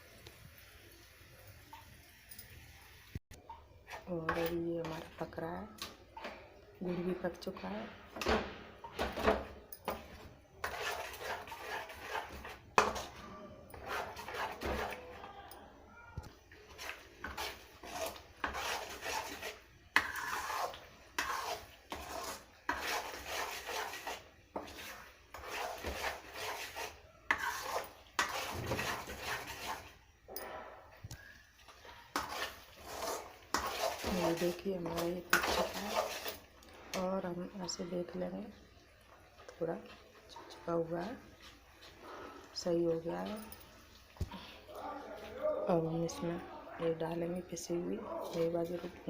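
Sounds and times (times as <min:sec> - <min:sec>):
spoon scraping cooking pan: 0:03.8 - 0:15.1, 0:16.6 - 0:30.9, 0:31.6 - 0:38.2.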